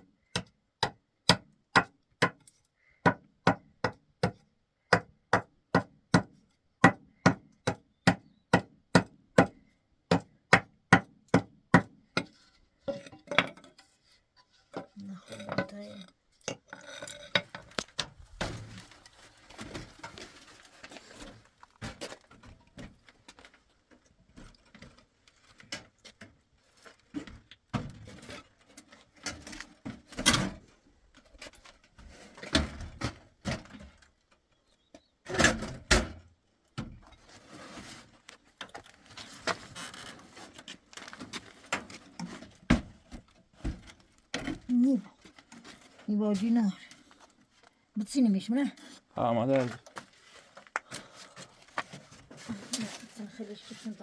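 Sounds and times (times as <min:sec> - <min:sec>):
objects knocking and clattering: 0:12.2 - 0:30.6.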